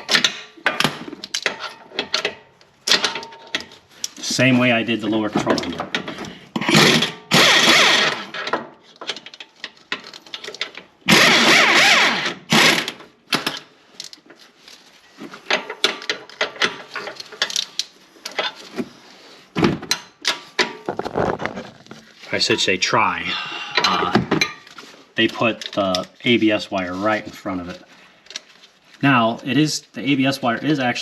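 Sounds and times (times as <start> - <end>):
power tool running: 7.3 - 8.3, 11.1 - 12.9.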